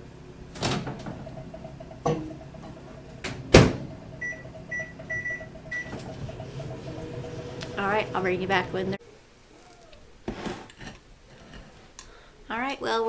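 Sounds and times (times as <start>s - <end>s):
plate clicking inside microwave: 0.0s - 9.0s
faint steady hum: 0.0s - 10.2s
microwave door knocking open: 0.3s - 8.8s
microwave door shutting thump: 0.4s - 8.8s
short keypad beeps: 4.2s - 6.1s.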